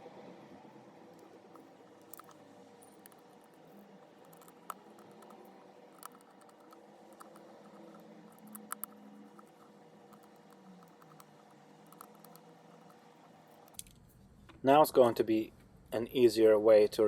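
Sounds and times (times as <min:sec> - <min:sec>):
tools clicking on plastic: 0:01.1 - 0:14.0.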